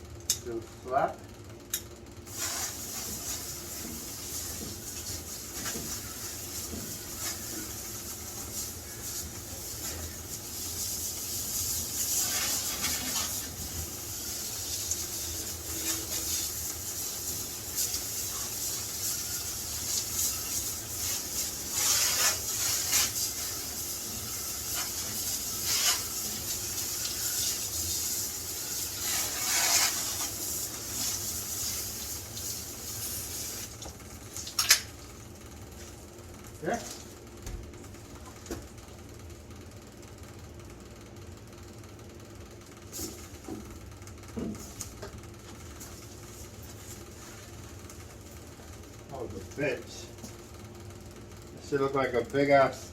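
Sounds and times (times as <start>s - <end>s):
water spraying from garden hose: 2.3s - 34.7s.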